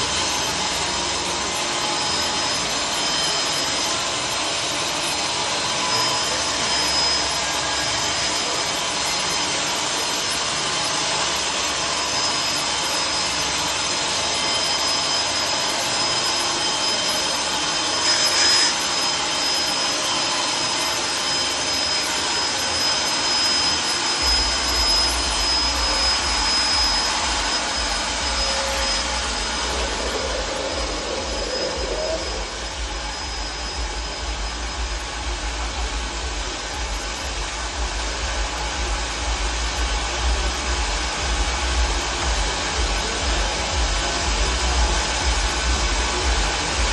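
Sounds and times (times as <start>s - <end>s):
sawmill machine high whine: 0.0s - 46.9s
low hum: 23.4s - 46.9s.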